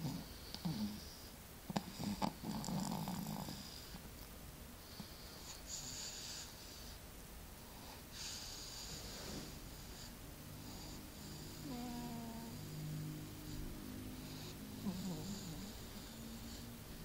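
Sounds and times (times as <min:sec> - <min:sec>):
baby snoring: 0:00.0 - 0:03.9, 0:10.0 - 0:17.0.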